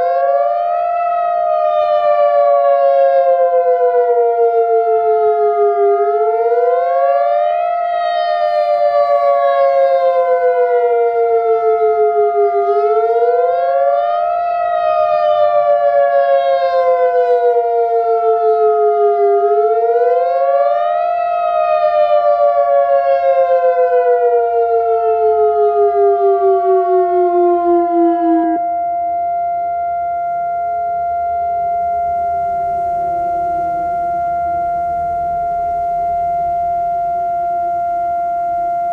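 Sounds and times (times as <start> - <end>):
warning siren wailing: 0.0 - 38.9
steady high tone: 26.8 - 38.9.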